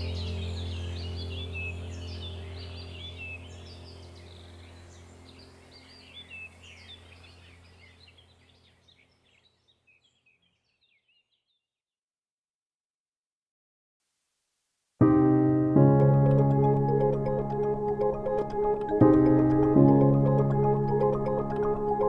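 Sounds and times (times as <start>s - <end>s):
small birds chirping and twittering: 0.0s - 11.6s.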